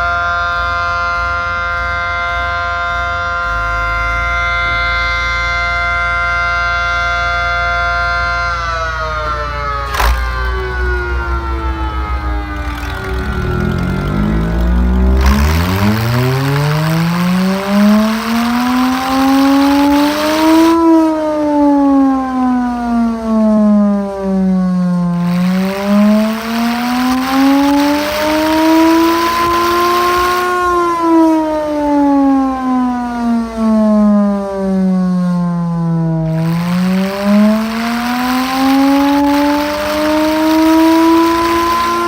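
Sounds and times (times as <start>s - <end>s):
air raid siren wailing: 0.0s - 42.0s.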